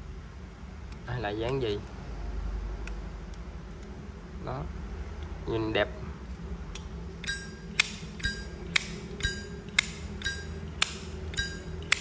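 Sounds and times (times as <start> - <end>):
lighter lid clinking open and shut: 7.2 - 12.0.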